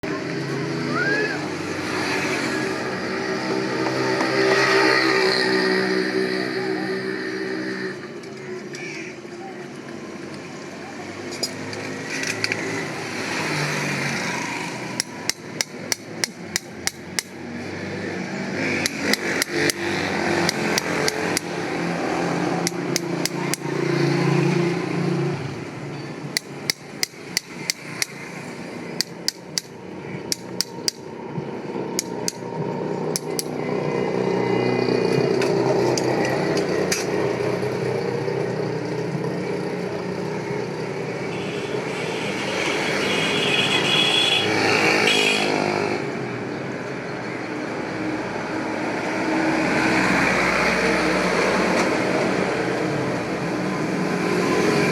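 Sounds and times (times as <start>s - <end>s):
steady background noise: 0.0s - 54.9s
hammer strikes: 3.8s - 4.9s, 14.9s - 17.4s, 18.8s - 21.6s, 22.6s - 23.9s, 26.3s - 28.4s, 29.0s - 31.1s, 32.0s - 32.5s, 33.1s - 33.5s.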